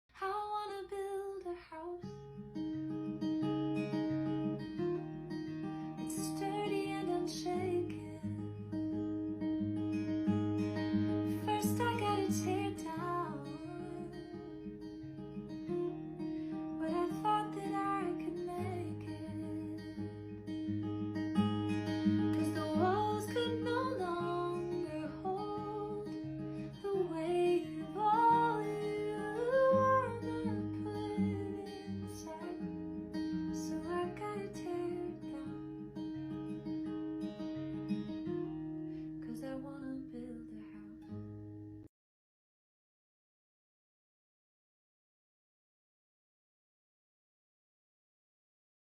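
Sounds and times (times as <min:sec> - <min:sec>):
acoustic guitar chords: 0:02.0 - 0:41.9
person singing: 0:16.8 - 0:19.8, 0:22.4 - 0:32.9.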